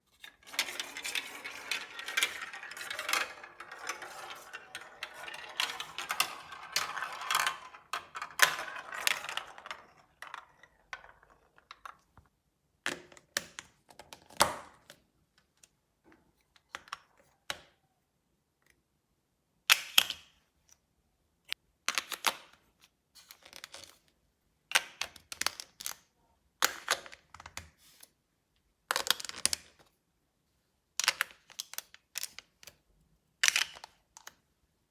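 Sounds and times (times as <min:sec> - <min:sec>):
plastic pieces and marbles rattling: 0:00.2 - 0:12.0.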